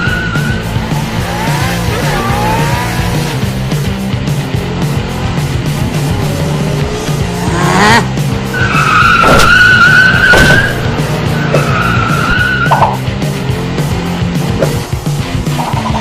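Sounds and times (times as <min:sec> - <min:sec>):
rock music with steady beat: 0:00.0 - 0:09.0, 0:09.6 - 0:16.0
cartoon tyre screech: 0:01.2 - 0:03.3.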